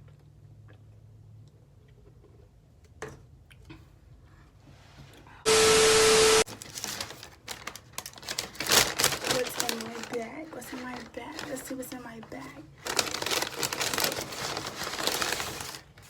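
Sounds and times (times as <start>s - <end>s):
paper bag rustling: 6.5s - 16.0s.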